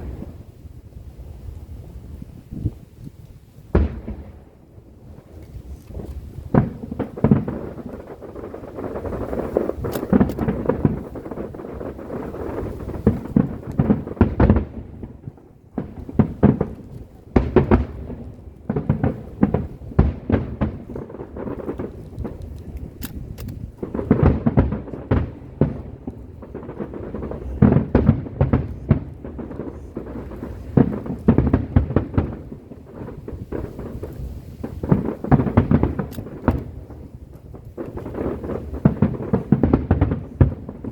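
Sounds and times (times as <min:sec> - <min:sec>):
fireworks bangs: 0:00.0 - 0:40.9.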